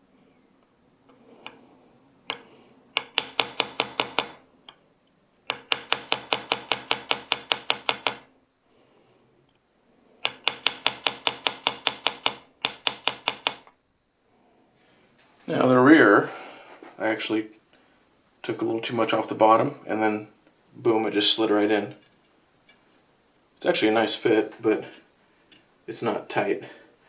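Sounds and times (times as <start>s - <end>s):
small hammer tapping a punch: 3.0s - 4.4s, 5.5s - 8.3s, 10.2s - 13.7s.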